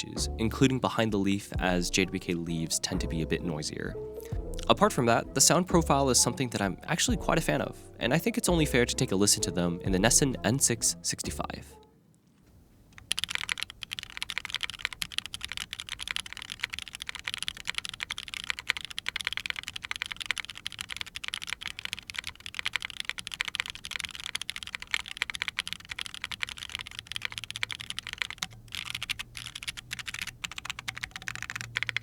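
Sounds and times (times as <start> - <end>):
rapid clacky keyboard typing: 12.9 - 32.0.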